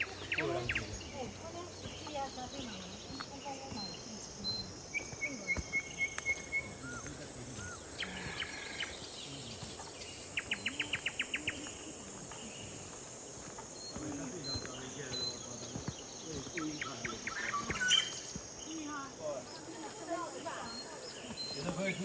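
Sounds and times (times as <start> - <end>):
birds chirping: 0.0 - 22.0
high insect drone: 0.0 - 22.0
bird trill: 13.8 - 18.9.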